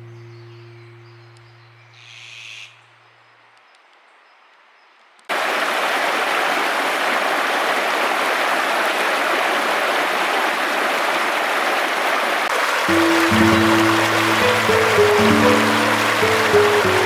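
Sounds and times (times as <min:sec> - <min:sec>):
rushing water: 0:05.3 - 0:17.0.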